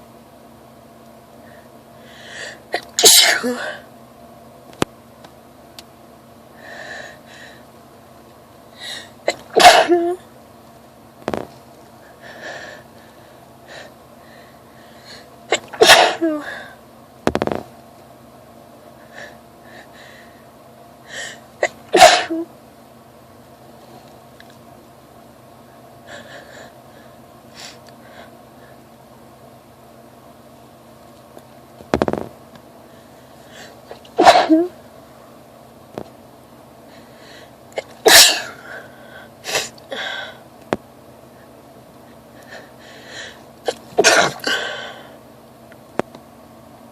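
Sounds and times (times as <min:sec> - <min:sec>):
woman sneezing: 0:02.8 - 0:03.8, 0:09.3 - 0:10.2, 0:15.5 - 0:16.7, 0:21.6 - 0:22.5, 0:33.9 - 0:34.8, 0:37.8 - 0:38.6, 0:43.7 - 0:44.9.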